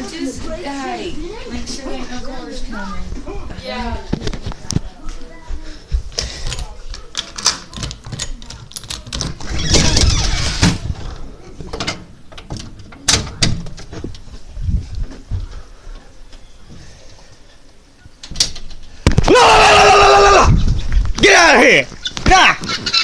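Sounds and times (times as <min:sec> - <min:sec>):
door opening and shutting: 0:07.2 - 0:14.2.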